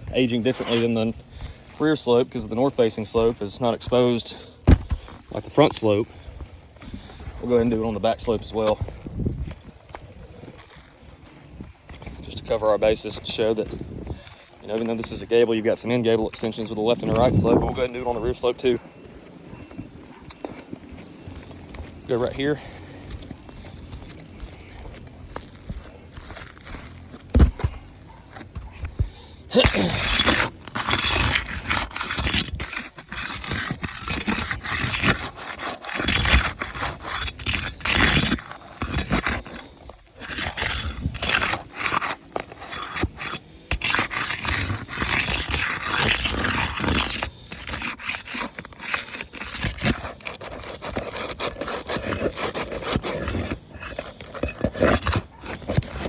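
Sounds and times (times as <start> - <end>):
shingles scraping: 0.0 - 56.0.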